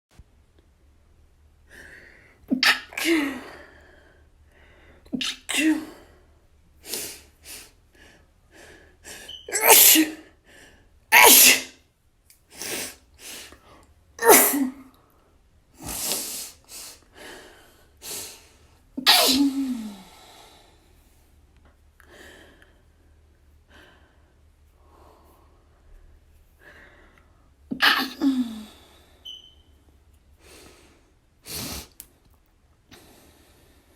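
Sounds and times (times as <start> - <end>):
person breathing: 1.7 - 2.5
person sneezing: 2.5 - 3.6, 5.1 - 6.0, 9.3 - 10.2, 11.1 - 11.8, 14.2 - 14.8, 15.8 - 17.0, 19.0 - 20.1, 27.7 - 29.4, 31.5 - 32.0.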